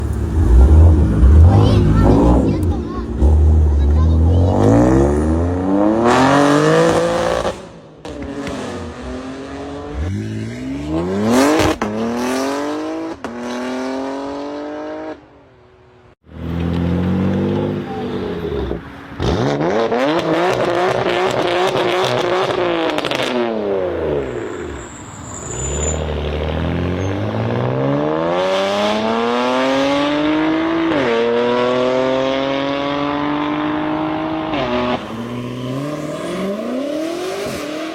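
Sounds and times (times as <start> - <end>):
car engines accelerating hard: 0.0 - 15.2, 26.1 - 37.9.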